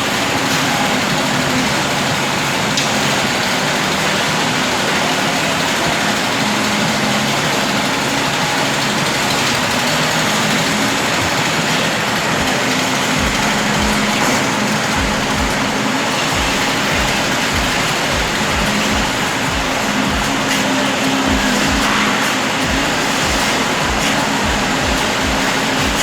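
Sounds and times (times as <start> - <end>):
engine running: 0.0 - 26.0
low thumps: 12.4 - 26.0.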